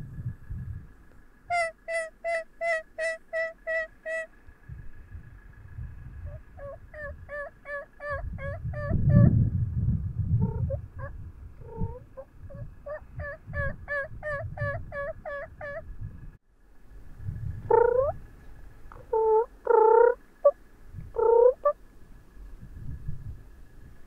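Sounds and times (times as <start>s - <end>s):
turkeys yelping: 1.5s - 4.4s, 6.2s - 9.3s, 10.4s - 15.9s, 17.7s - 18.2s, 18.9s - 20.6s, 21.2s - 21.8s.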